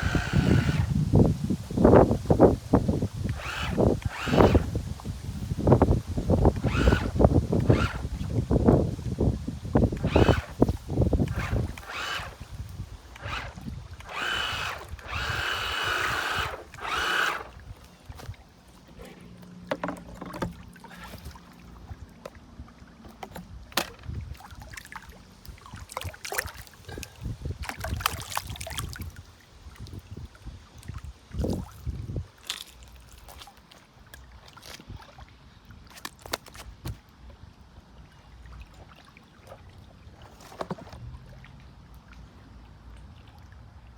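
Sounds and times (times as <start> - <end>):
small electric motor whining: 0.0 - 8.9, 9.7 - 17.6.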